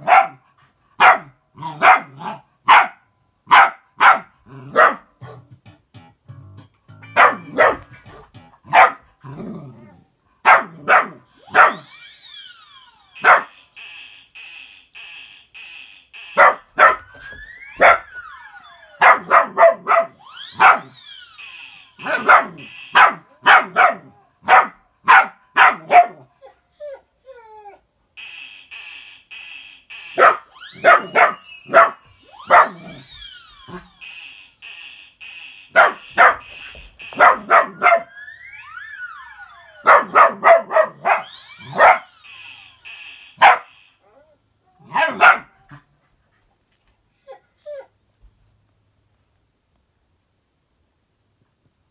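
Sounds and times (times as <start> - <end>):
dog barking: 0.0 - 0.4, 1.0 - 5.5, 7.2 - 7.9, 8.7 - 9.0, 10.4 - 11.8, 13.2 - 13.5, 16.4 - 17.0, 19.0 - 20.9, 22.0 - 26.3, 30.2 - 32.8, 35.8 - 36.5, 37.1 - 38.1, 39.8 - 42.1, 43.4 - 43.7, 44.8 - 45.6
dog whining and yipping: 11.4 - 13.5, 16.4 - 23.2, 25.9 - 27.8, 30.2 - 34.0, 39.0 - 42.8, 47.2 - 48.0
high-pitched pulsing sound: 41.2 - 44.0.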